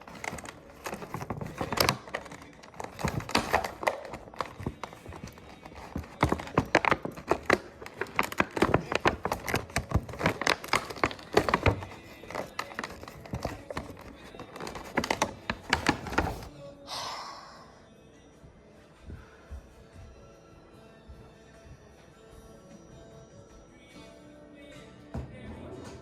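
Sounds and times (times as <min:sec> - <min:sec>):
clicks and taps on plastic packaging: 0:00.0 - 0:16.5
packaging rustle: 0:00.0 - 0:16.5.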